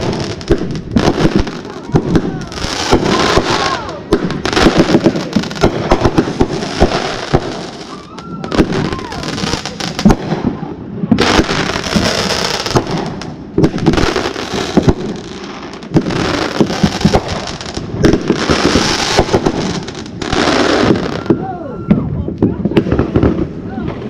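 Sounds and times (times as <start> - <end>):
fireworks hissing crackle: 0.0 - 21.5
fireworks bangs and pops: 0.0 - 24.0.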